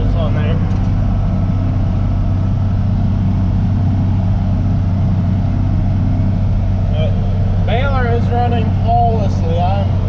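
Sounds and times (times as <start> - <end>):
tractor engine under load: 0.0 - 10.0.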